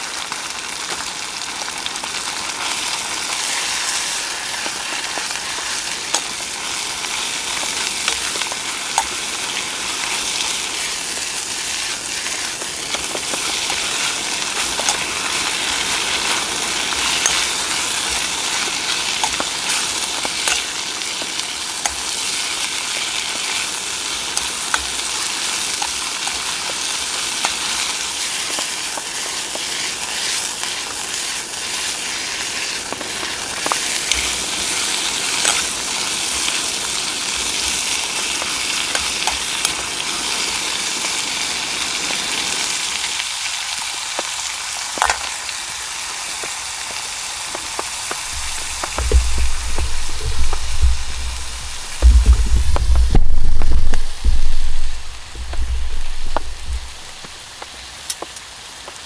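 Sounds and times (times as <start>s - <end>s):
food sizzling in a hot pan: 0.0s - 59.0s
small pops and crackles: 44.9s - 45.3s, 47.5s - 59.0s.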